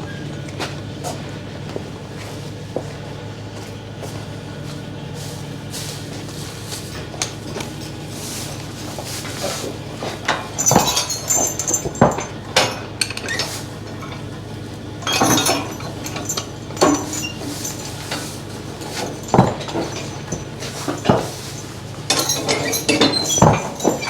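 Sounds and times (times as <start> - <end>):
metal clinks and clanks: 5.2 - 24.0.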